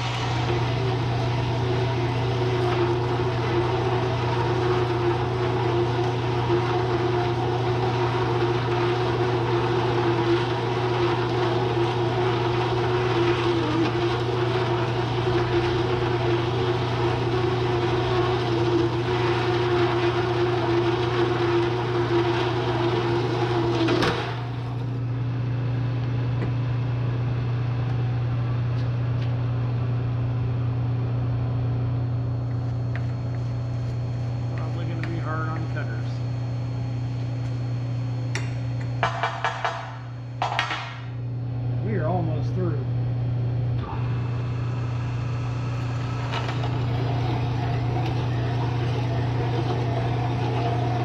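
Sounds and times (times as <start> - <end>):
milling machine cutting steel: 0.0 - 24.8, 43.8 - 51.0
motor hum: 0.0 - 51.0.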